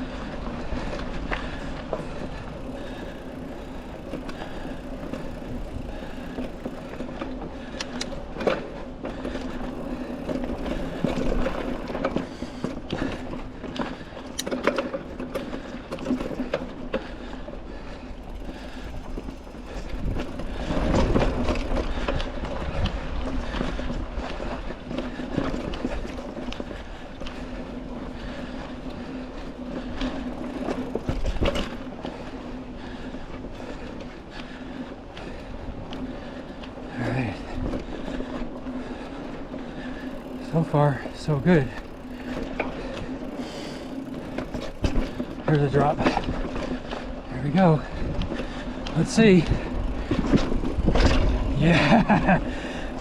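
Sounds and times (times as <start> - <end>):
bike rattling over bumps: 0.0 - 53.0
bike tyres rolling on dirt: 0.0 - 53.0.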